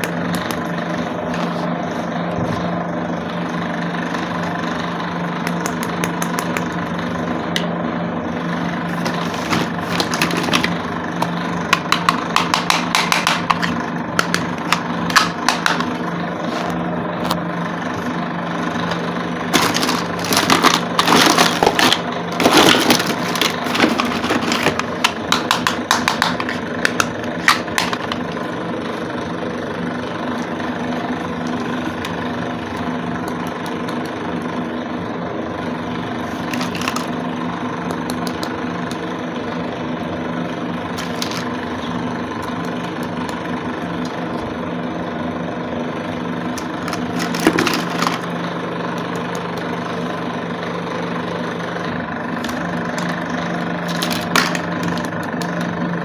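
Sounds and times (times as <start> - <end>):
plastic toy pieces clicking: 9.1 - 16.0, 18.9 - 28.2, 36.4 - 37.1, 53.9 - 55.7.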